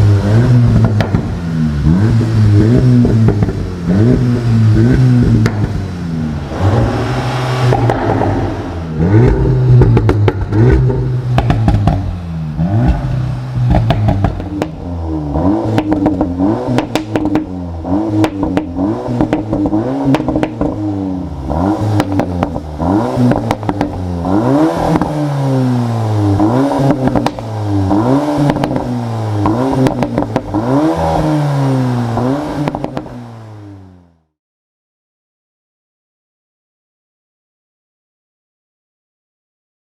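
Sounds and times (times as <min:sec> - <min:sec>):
car exhaust revving: 0:00.0 - 0:34.3
exhaust pops and crackles: 0:00.6 - 0:01.5, 0:02.9 - 0:03.7, 0:05.2 - 0:05.9, 0:09.2 - 0:12.2, 0:12.8 - 0:14.9, 0:15.7 - 0:17.6, 0:18.2 - 0:20.8, 0:21.9 - 0:24.1, 0:26.8 - 0:27.5, 0:28.4 - 0:30.6.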